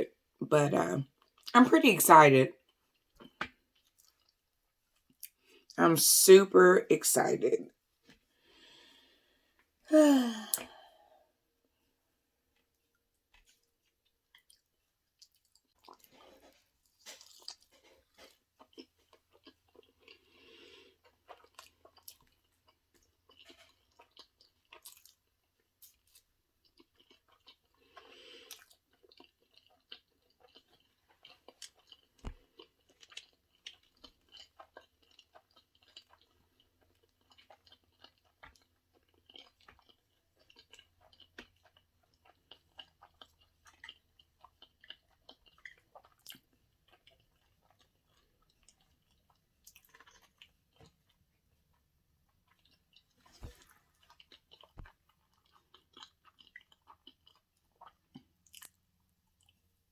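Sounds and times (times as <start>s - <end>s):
mouth chewing food: 12.6s - 59.6s.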